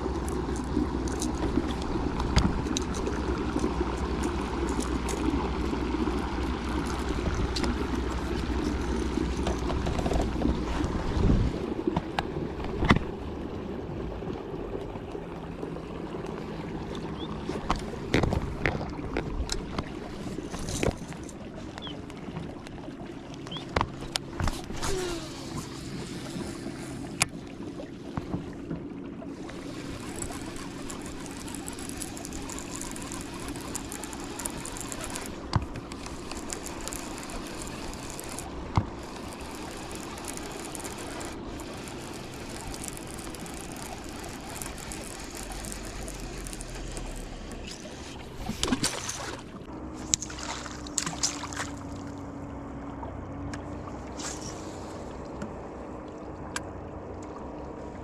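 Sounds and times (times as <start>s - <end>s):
electric motor humming: 0.0s - 11.0s, 29.3s - 52.2s
water lapping against hull: 0.0s - 58.0s.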